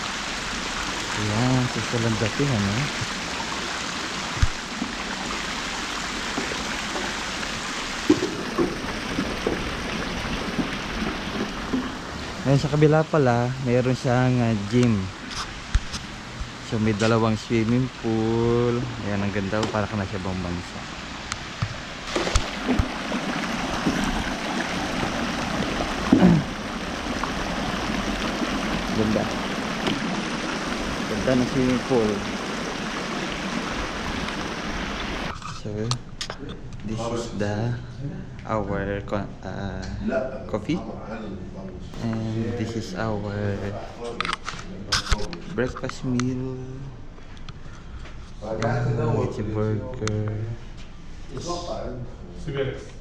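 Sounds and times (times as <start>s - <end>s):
running water rushing: 0.0s - 35.4s.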